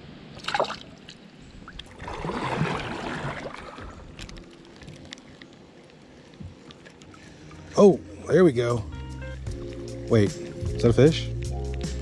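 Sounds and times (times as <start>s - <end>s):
sharp water splash: 0.3s - 4.1s
swishing wash of water: 0.3s - 4.3s.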